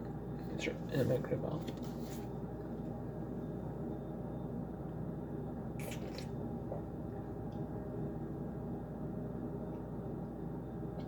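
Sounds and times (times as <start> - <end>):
steady low hum: 0.0 - 11.0
soft squishy noises: 5.8 - 7.0.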